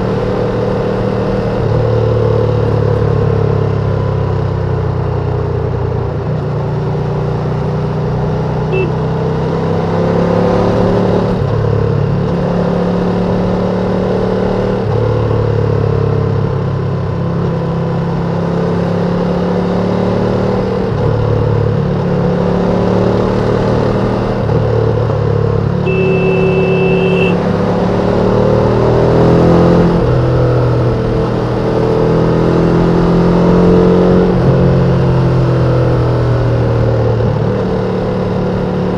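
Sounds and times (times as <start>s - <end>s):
short steady beep: 8.7s - 9.0s, 25.8s - 27.4s
motorcycle engine running: 8.7s - 9.4s, 23.9s - 32.2s.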